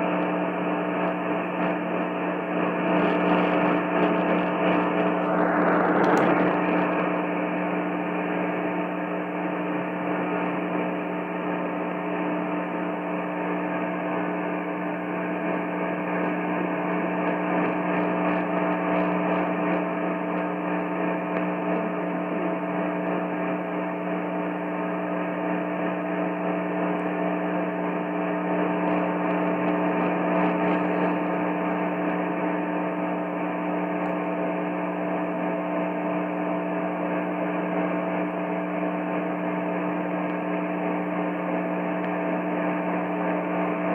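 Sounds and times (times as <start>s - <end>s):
radio buzzing hum with hiss: 0.0s - 43.9s.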